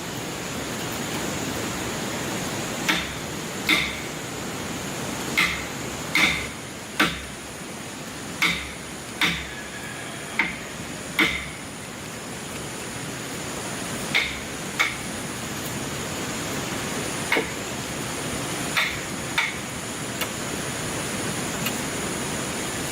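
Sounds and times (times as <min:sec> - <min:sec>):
background hiss: 0:00.0 - 0:22.9
hammer strikes with metallic ring: 0:02.9 - 0:04.1, 0:05.4 - 0:07.3, 0:08.4 - 0:09.6, 0:11.2 - 0:11.6.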